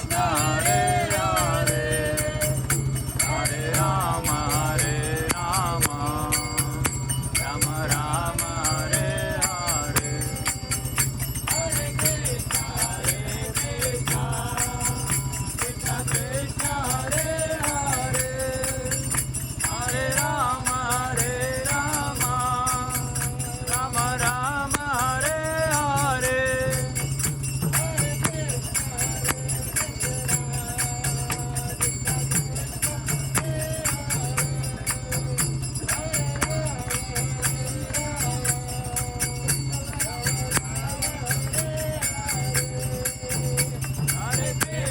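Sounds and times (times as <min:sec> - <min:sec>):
jingling hand cymbals: 0:00.0 - 0:44.9
person singing a chant: 0:00.0 - 0:44.9
steady low drone: 0:00.0 - 0:44.9.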